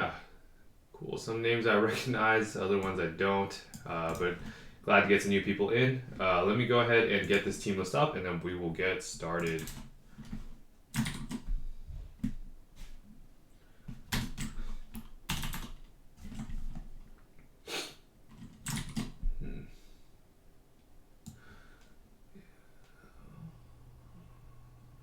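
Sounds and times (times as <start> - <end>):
keyboard typing and clicks: 9.4 - 11.6, 13.9 - 16.8, 18.3 - 19.2.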